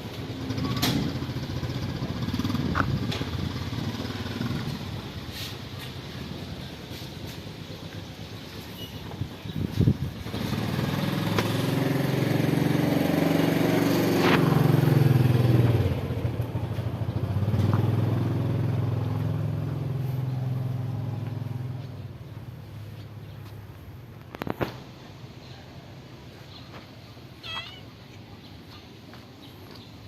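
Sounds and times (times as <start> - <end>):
vehicle engine passing by: 0.2 - 7.8, 9.6 - 22.8.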